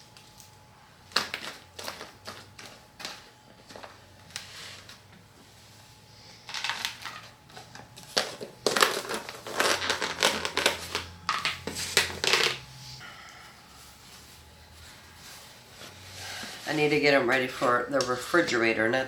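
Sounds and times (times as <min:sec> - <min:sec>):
plastic bag crinkling: 0:06.5 - 0:12.7.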